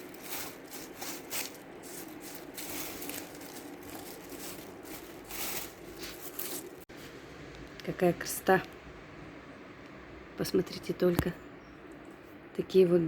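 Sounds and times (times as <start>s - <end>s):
dry rustling and crinkling: 0.0s - 7.2s.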